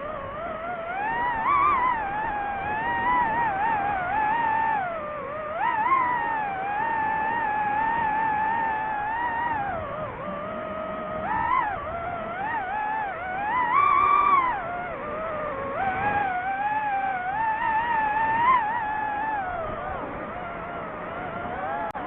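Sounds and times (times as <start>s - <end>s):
drone propellers whining: 0.0s - 22.0s.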